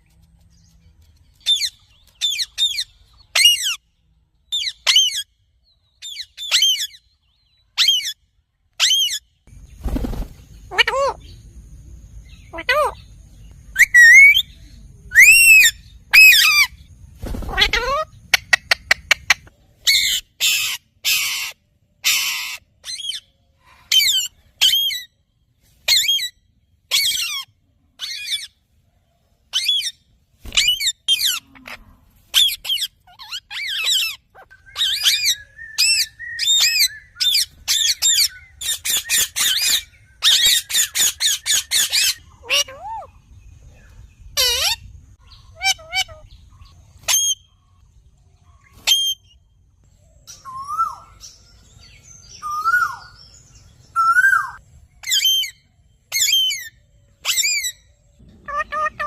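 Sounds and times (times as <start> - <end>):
parrot whistles and squawks: 13.8 - 14.5, 15.1 - 16.7, 29.5 - 43.1, 48.8 - 49.3, 54.0 - 57.8, 58.5 - 59.0.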